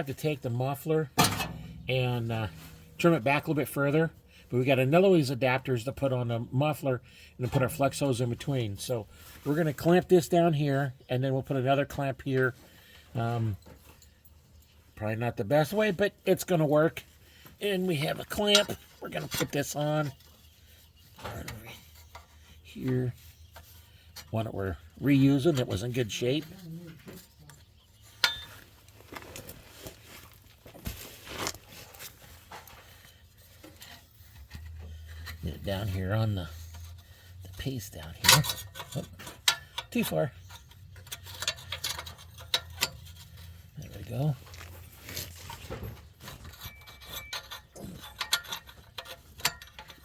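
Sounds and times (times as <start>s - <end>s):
metal rustling: 0.2s - 4.2s, 15.6s - 50.0s
metal clinks and scraping: 1.1s - 4.0s, 12.9s - 15.0s, 17.9s - 29.6s, 31.4s - 50.0s
metallic clink: 46.5s - 50.0s.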